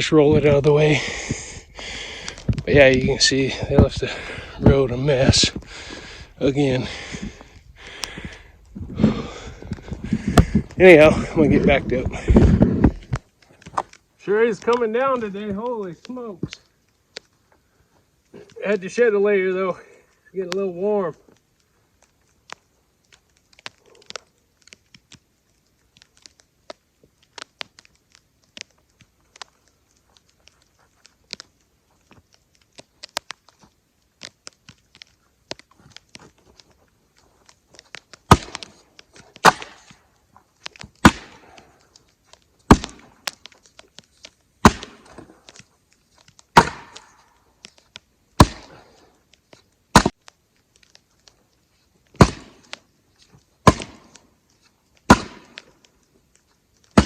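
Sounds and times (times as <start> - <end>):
firewood thudding into truck bed: 53.6 - 54.0.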